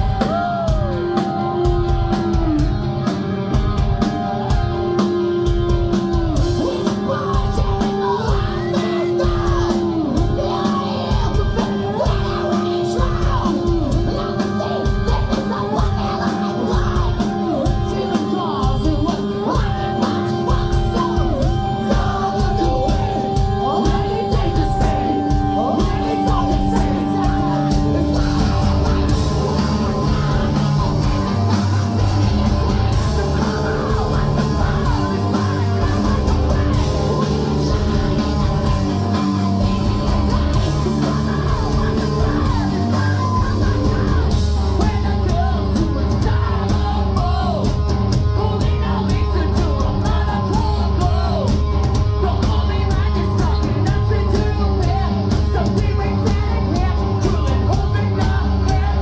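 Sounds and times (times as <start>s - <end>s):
screamed vocals: 0.0s - 5.4s, 6.0s - 47.7s
bass: 0.0s - 59.0s
distorted guitars: 0.0s - 59.0s
drums: 0.0s - 59.0s.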